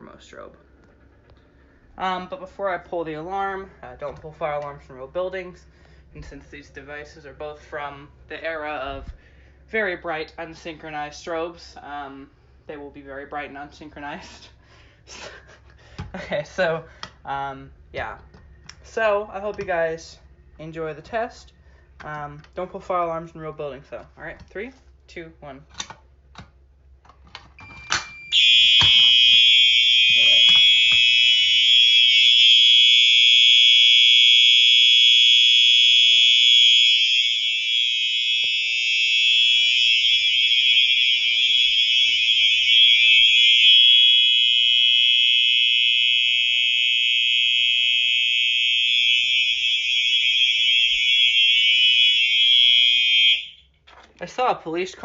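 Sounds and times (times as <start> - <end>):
fire alarm horn: 27.8 - 53.8.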